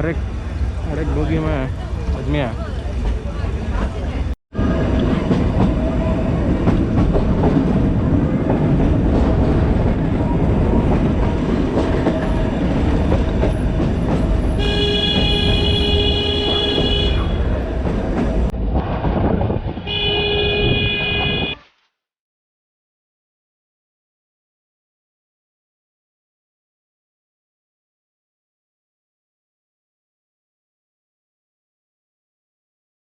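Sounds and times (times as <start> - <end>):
train rumble and wheel clatter: 0.0 - 21.6
train horn blast: 14.5 - 17.5, 19.8 - 21.6.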